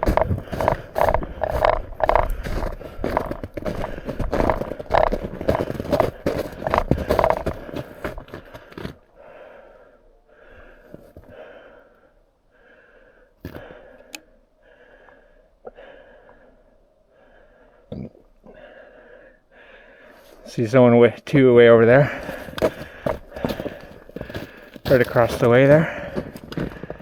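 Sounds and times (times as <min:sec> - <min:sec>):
footsteps crunching through snow: 0:00.0 - 0:09.0, 0:22.0 - 0:27.0
heavy breathing: 0:00.0 - 0:20.5, 0:21.9 - 0:27.0.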